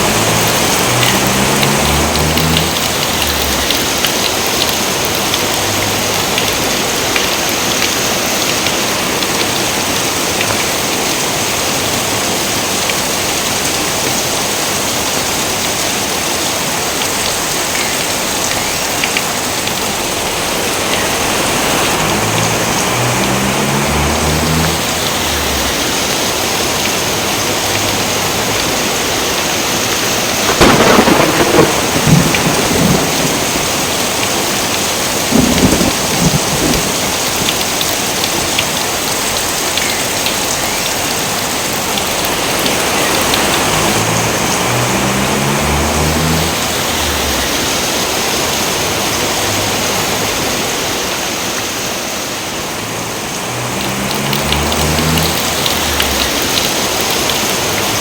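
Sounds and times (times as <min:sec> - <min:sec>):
heavy rain: 0:00.0 - 0:58.0
thunder crack and rumble: 0:30.3 - 0:37.8.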